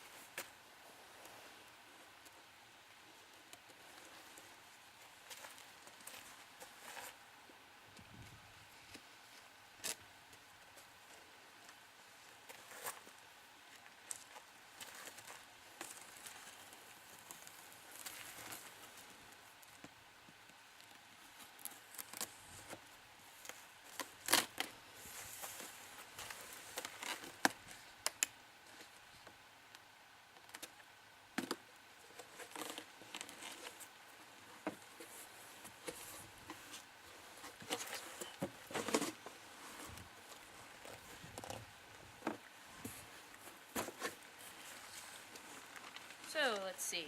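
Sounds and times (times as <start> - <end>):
cardboard box being handled: 34.6 - 46.2.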